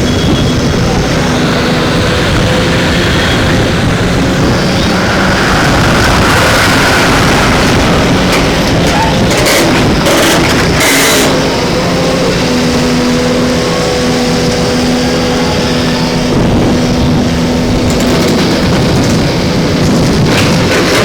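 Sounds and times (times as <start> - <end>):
machine motor whining: 0.9 - 16.6.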